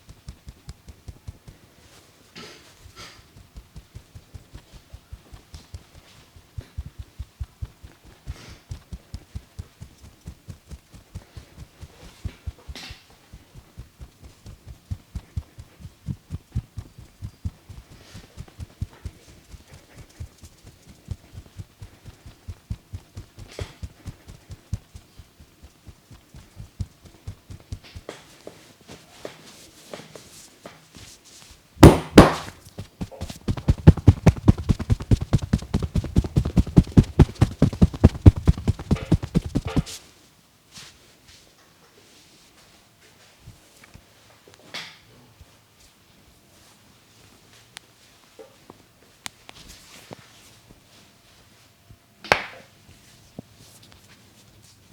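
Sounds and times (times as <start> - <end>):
hands patting on a neck: 0.0 - 28.2, 31.8 - 40.0
loud slap: 31.8 - 32.6.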